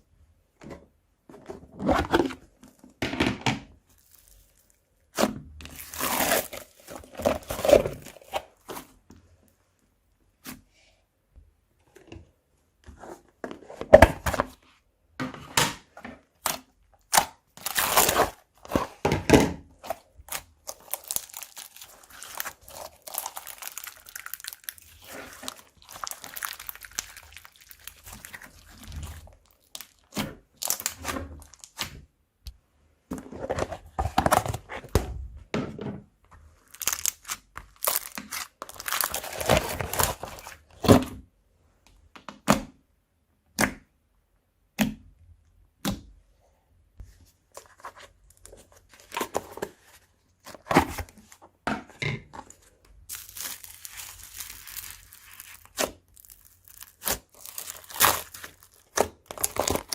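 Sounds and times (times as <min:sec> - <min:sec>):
soft slime crinkling: 0:03.8 - 0:07.7, 0:19.9 - 0:31.8, 0:53.0 - 0:59.9
slime crackling and popping: 0:20.3 - 0:32.0, 0:53.1 - 0:59.9.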